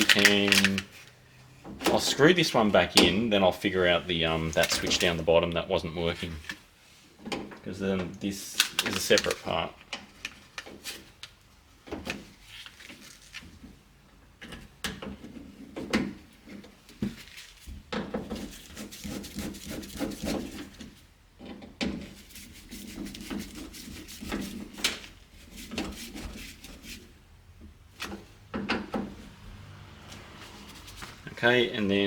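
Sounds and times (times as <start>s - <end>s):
clicks and knocks of parts handled: 0.0s - 2.0s, 8.4s - 11.4s.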